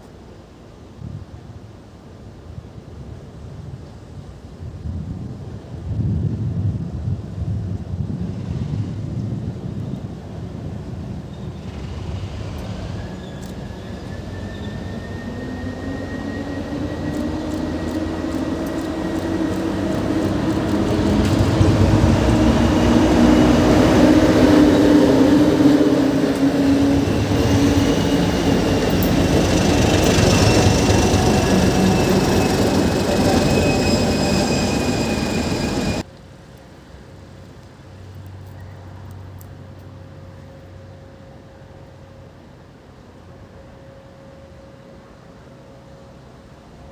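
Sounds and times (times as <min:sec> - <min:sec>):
train rumbling past: 0:04.3 - 0:38.1, 0:38.7 - 0:46.9
high gliding whines: 0:11.6 - 0:36.1.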